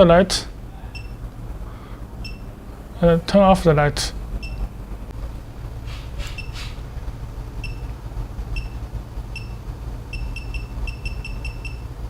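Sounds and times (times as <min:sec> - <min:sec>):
steady low hum: 0:00.0 - 0:12.0
short electronic beeps: 0:00.9 - 0:01.2, 0:02.2 - 0:02.5, 0:04.4 - 0:04.7, 0:09.4 - 0:11.9.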